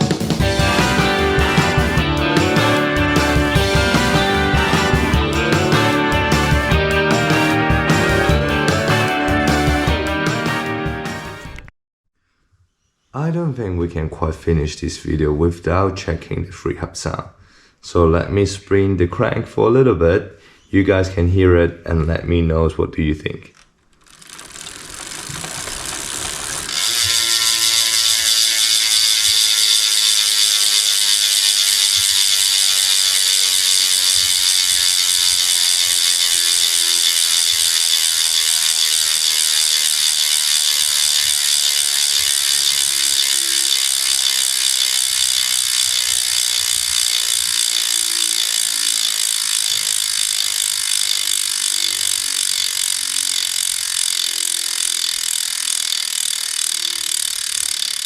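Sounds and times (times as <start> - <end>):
bicycle freehub ratcheting: 23.6 - 58.0.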